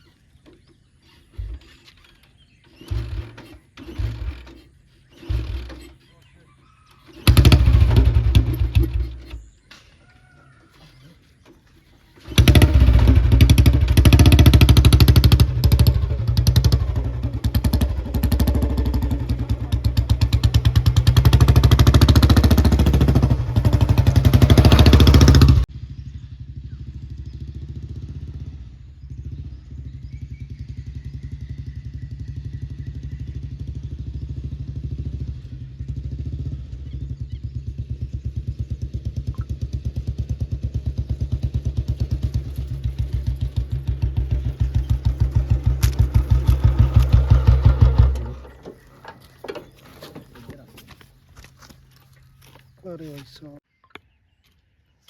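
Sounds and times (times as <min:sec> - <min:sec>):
motorcycle engine running: 0:00.6 - 0:09.6, 0:11.8 - 0:52.8.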